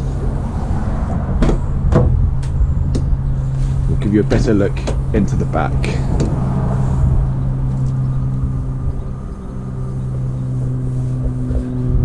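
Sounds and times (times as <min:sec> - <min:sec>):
van engine idling: 0:00.0 - 0:12.0.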